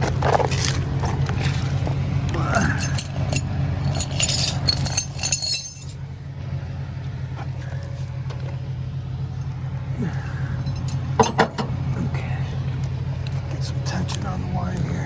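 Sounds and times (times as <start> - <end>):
tow truck engine idling: 0.0 - 15.0
chains and hook clinking: 0.2 - 6.2, 10.5 - 11.7.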